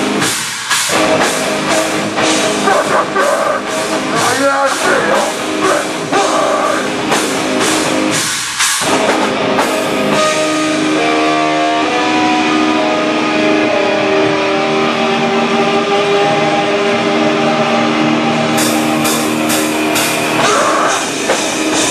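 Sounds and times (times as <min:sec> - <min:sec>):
heavy rock band playing: 0:00.0 - 0:21.9.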